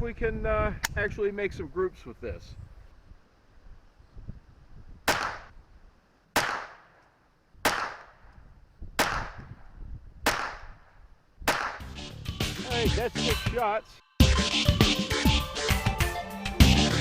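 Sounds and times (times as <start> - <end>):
pistol shots: 5.1 - 5.5, 6.3 - 7.0, 7.6 - 8.3, 9.0 - 9.4, 10.2 - 10.7, 11.5 - 11.8.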